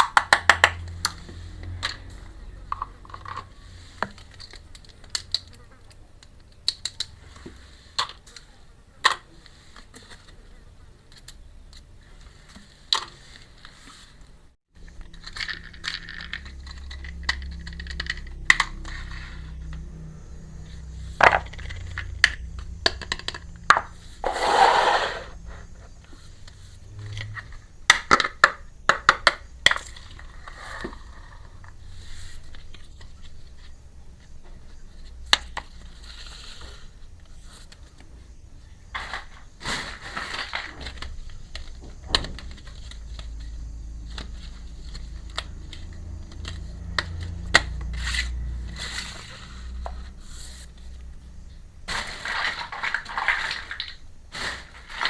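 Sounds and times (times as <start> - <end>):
toy pieces clicking and tapping: 0.0 - 2.0, 15.0 - 18.9, 21.2 - 23.9
scraping rustle: 24.0 - 27.6, 39.0 - 43.5.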